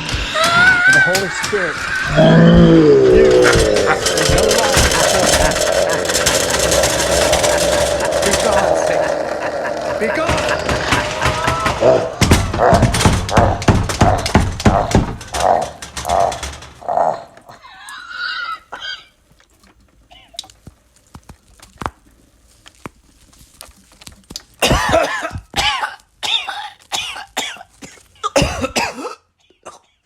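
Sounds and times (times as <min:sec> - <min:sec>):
person moaning: 0:02.1 - 0:12.2
person strained guttural vocalizing: 0:02.1 - 0:19.1
person coughing harshly: 0:24.6 - 0:30.0.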